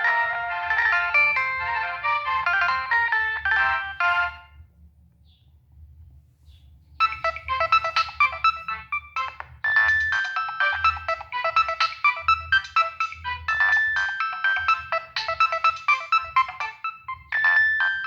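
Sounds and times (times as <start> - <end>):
phone ringtone melody: 0.0 - 4.6, 7.0 - 18.0.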